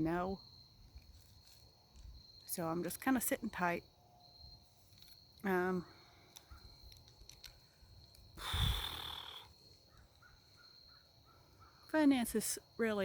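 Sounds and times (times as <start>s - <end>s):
crickets droning: 0.0s - 13.0s
person sighing: 8.4s - 9.5s.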